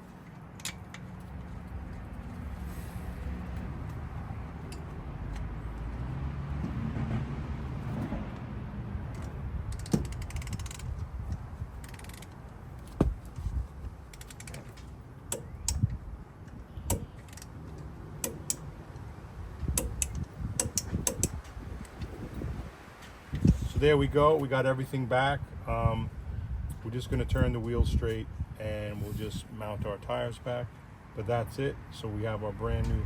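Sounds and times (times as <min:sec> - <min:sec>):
socket ratchet clicking: 0:09.7 - 0:10.9, 0:11.8 - 0:12.4, 0:18.2 - 0:18.7, 0:19.7 - 0:21.9.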